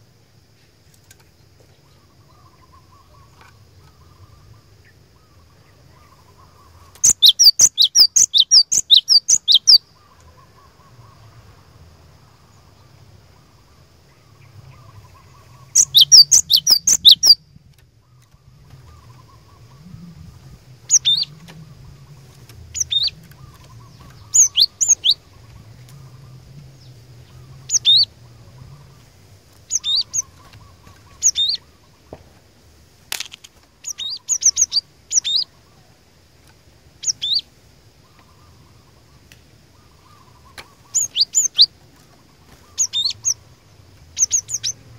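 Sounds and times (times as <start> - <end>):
bird singing rapid high notes: 6.9 - 9.8, 14.8 - 17.4, 19.0 - 29.0, 29.7 - 31.6, 33.8 - 35.5, 37.0 - 37.5, 40.0 - 41.7, 42.5 - 43.5, 44.1 - 44.9.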